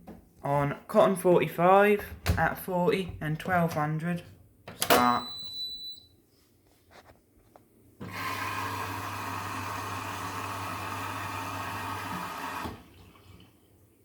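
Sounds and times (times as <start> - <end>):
washing machine mains hum: 2.0 - 6.2, 8.0 - 14.0
water rushing into washing machine: 8.0 - 13.7.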